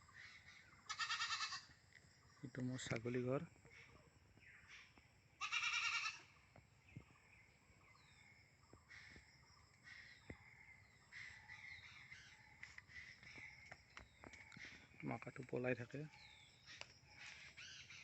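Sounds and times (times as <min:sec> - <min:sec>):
goat kid bleating: 0:00.9 - 0:01.7, 0:05.4 - 0:06.3
thin bird chirps: 0:06.4 - 0:18.0.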